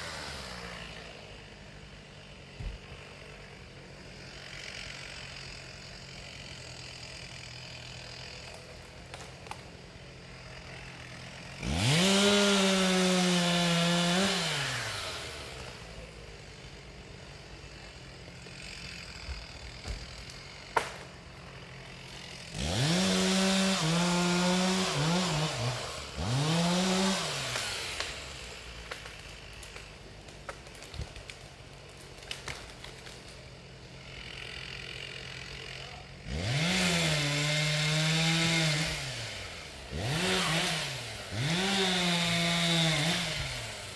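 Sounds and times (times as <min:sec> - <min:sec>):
chainsaw idling and revving: 0:00.0 - 0:43.9.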